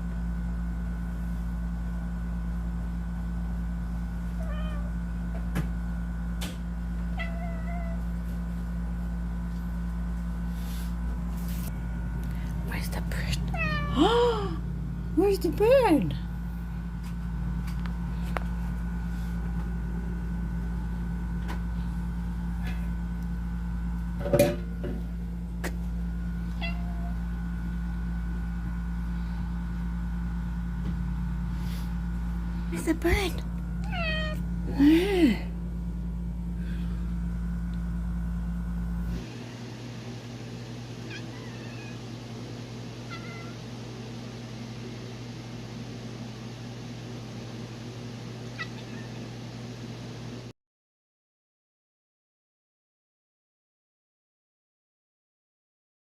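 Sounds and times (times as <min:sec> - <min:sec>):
low hum: 0:00.0 - 0:50.4
cat chirping: 0:41.1 - 0:42.0, 0:43.1 - 0:43.6, 0:48.6 - 0:49.2.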